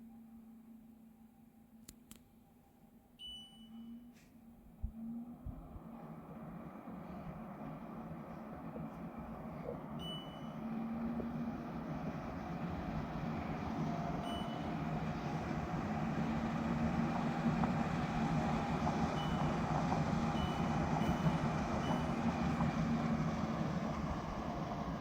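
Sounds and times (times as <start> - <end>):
short high beeps: 3.2 - 4.1, 10.0 - 10.6
air purifier fan running: 4.7 - 25.0.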